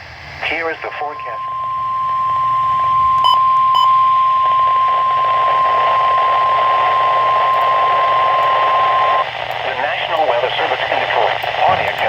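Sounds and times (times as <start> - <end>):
radio static hiss: 0.3 - 2.0, 4.3 - 12.0
steady alarm beep: 0.7 - 9.2.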